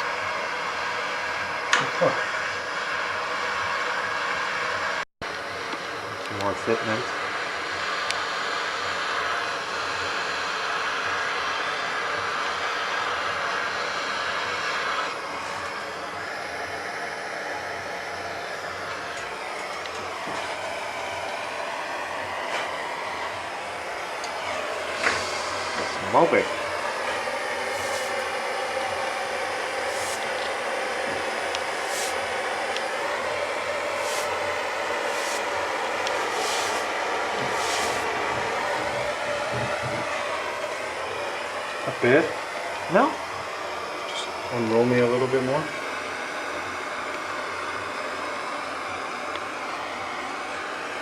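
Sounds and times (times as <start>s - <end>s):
gas torch flame hissing: 5.3s - 43.4s.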